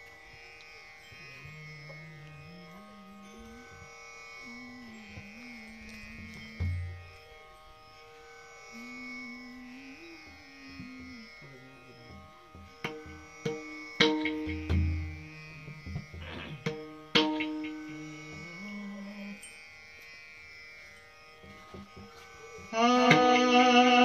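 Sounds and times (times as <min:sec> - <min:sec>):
slow melody line: 0:00.0 - 0:20.1, 0:20.9 - 0:24.0
sustained drone chord: 0:00.0 - 0:24.0
drum strokes: 0:12.6 - 0:18.5.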